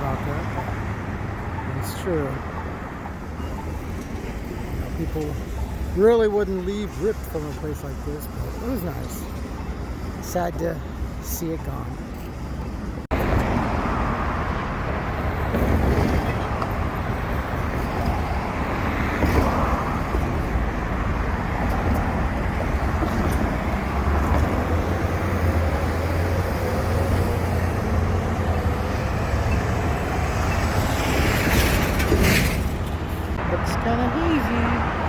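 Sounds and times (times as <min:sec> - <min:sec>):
cars passing with low rumble: 0:00.0 - 0:35.0.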